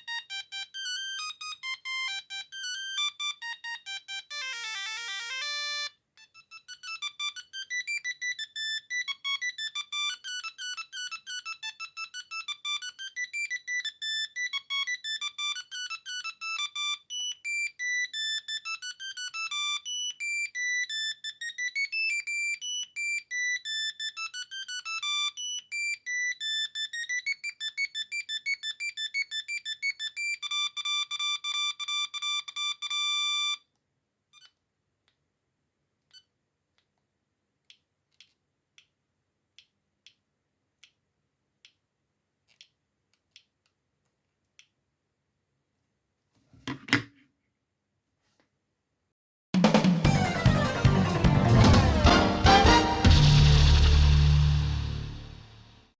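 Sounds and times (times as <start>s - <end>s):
mobile phone ringtone beeping melody: 0.0s - 33.6s.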